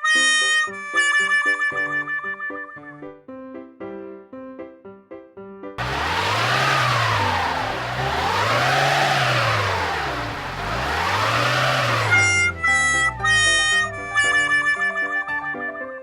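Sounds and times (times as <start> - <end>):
car engine revving: 5.8 - 14.1
light plucked music: 12.5 - 16.0.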